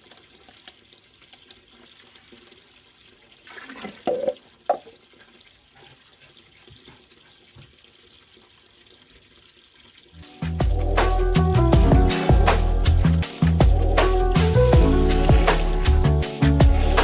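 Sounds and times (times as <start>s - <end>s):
hose water running into pond: 0.0s - 17.0s
water splashing: 10.8s - 17.0s.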